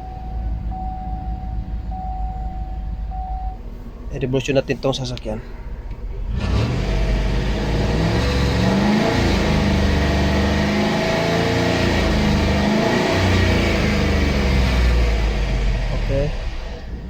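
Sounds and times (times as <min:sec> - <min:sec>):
car engine revving: 0:00.0 - 0:17.0.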